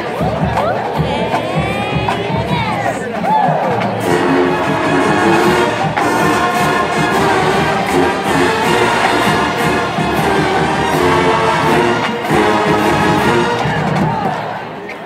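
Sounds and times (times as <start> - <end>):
steady drum beat: 0.0 - 14.5
brass chords: 3.7 - 14.5.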